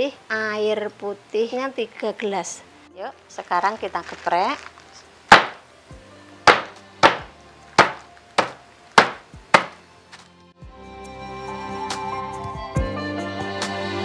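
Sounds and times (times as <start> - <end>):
background music: 0.0 - 14.0
roots smashed against hard surface: 5.3 - 5.6, 6.5 - 9.8.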